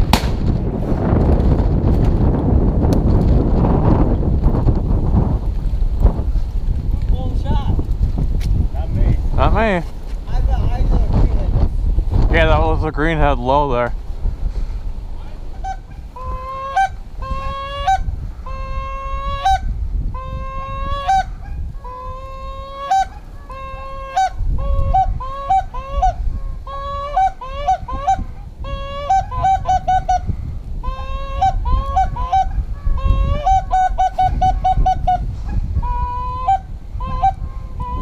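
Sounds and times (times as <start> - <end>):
wind buffeting microphone: 0.0 - 38.0
duck calls quacking: 15.5 - 19.6, 20.2 - 30.2, 30.8 - 35.2.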